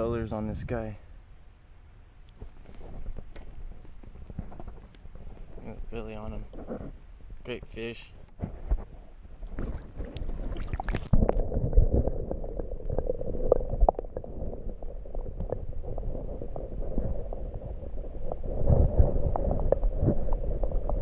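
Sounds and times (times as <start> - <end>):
water sloshing and gurgling: 8.7 - 21.0.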